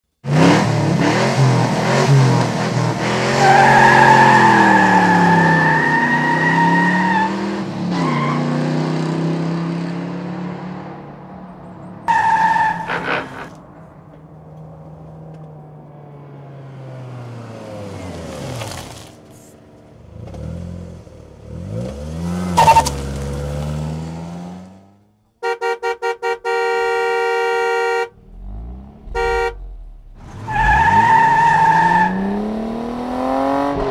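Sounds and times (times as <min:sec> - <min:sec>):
car engine revving: 0:00.2 - 0:33.9
tyres squealing: 0:03.4 - 0:08.5, 0:12.1 - 0:13.7, 0:30.2 - 0:32.5
car horn honking: 0:22.6 - 0:23.0, 0:25.3 - 0:32.3.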